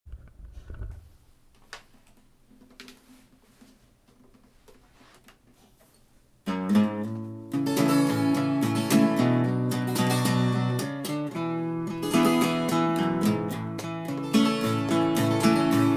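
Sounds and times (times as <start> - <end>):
acoustic guitar strumming chords: 6.4 - 15.9.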